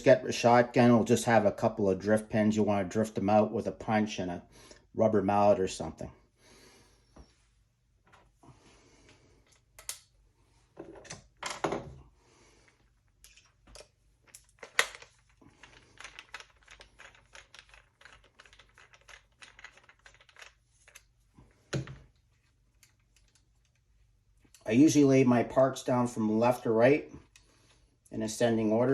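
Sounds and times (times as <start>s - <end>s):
metal parts clicking and knocking: 13.2s - 21.0s.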